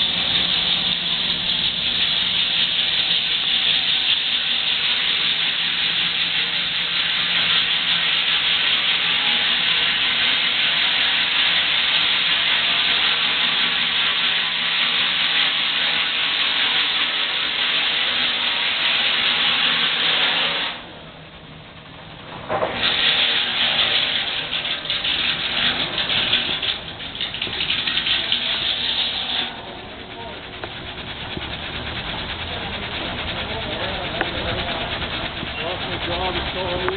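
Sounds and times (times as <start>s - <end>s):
steam engine and sawmill hissing: 0.0s - 21.1s, 22.4s - 36.9s.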